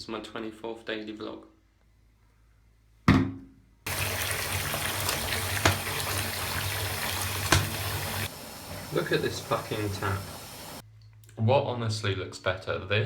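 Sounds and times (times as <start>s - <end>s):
water gushing from a tap: 3.9s - 10.8s.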